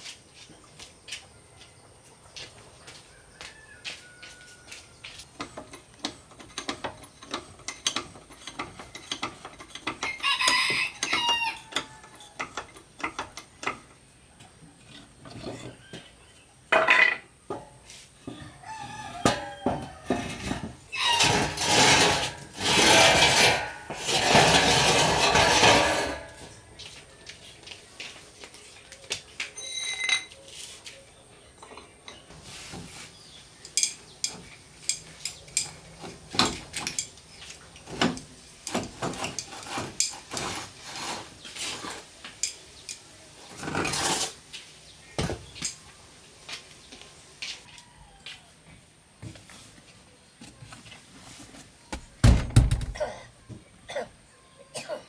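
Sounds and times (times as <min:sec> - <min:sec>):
rooster crowing: 0:03.0 - 0:05.1, 0:10.1 - 0:12.4, 0:18.3 - 0:21.6, 0:47.7 - 0:48.7
metal tools clinking: 0:29.6 - 0:30.4.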